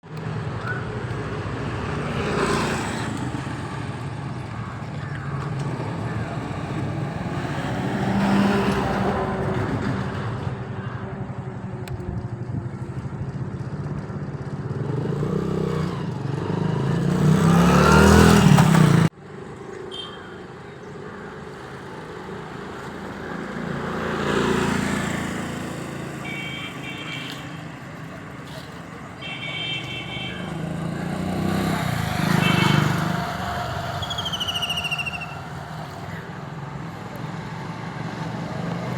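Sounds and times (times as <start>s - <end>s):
vehicles passing: 0.0s - 38.9s.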